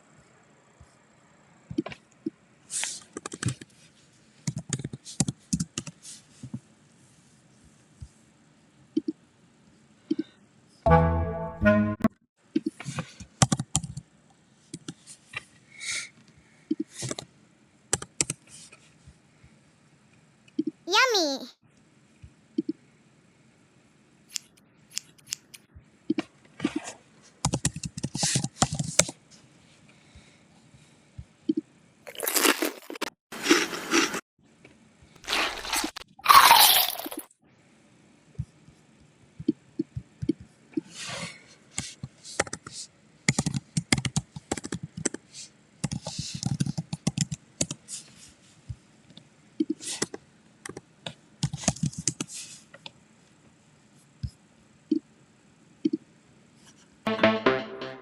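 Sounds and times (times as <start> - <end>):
crunching and scraping noises: 32.1 - 34.2, 35.2 - 37.3.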